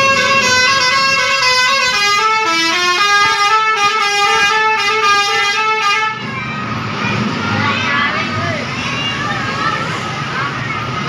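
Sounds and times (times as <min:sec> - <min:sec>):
bus air horn playing a melody: 0:00.0 - 0:06.2.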